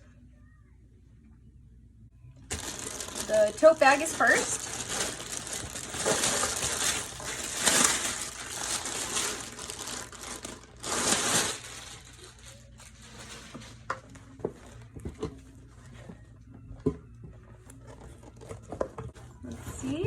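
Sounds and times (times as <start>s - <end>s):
packaging crinkling and rustling: 2.4s - 15.2s.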